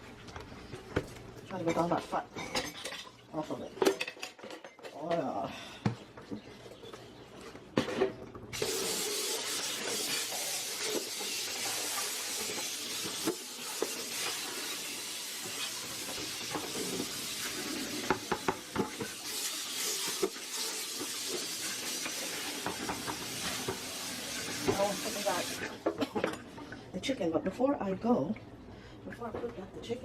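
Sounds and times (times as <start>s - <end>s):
tap water running into sink: 8.6s - 25.9s.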